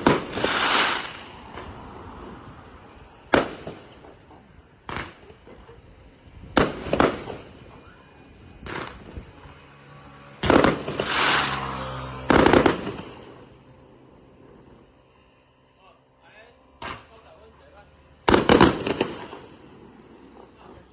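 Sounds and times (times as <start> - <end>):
firework crackling bursts: 0.0 - 5.7, 6.5 - 9.2, 10.4 - 13.7, 18.3 - 20.9
firework bangs: 0.0 - 5.8, 6.4 - 9.4, 10.3 - 13.6, 18.2 - 20.9.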